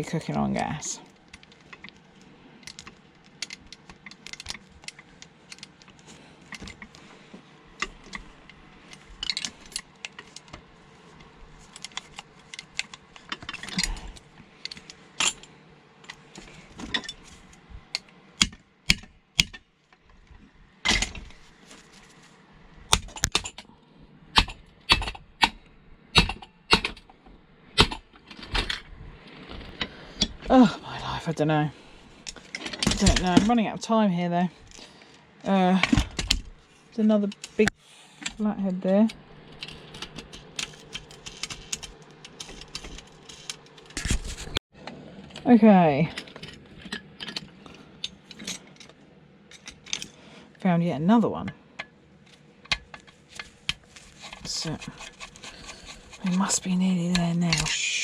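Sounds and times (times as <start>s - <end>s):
metal parts clinking: 11.6s - 16.2s, 39.4s - 44.4s.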